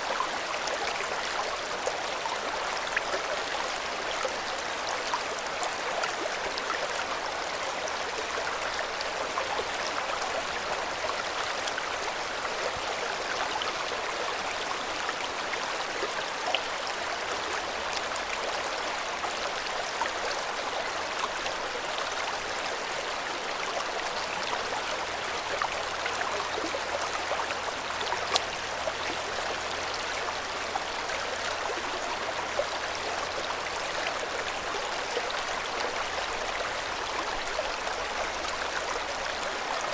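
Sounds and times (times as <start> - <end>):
river water rushing over rocks: 7.0 - 39.9
small splashes and trickles: 23.5 - 35.5.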